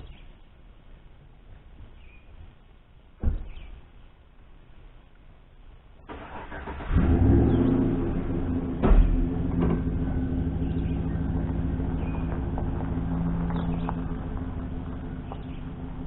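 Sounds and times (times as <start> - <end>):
thump: 3.2 - 3.6, 8.8 - 9.9
truck engine cranking and idling: 6.0 - 16.0.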